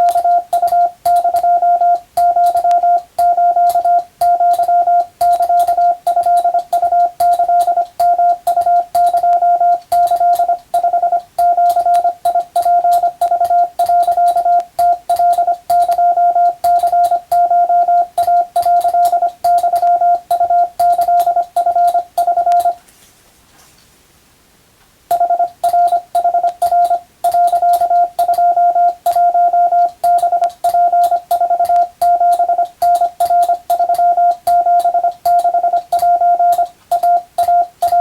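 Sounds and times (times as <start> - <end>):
morse code beeps: 0.0 - 22.8, 25.1 - 38.0
telegraph key clicks: 0.0 - 22.8, 25.1 - 38.0.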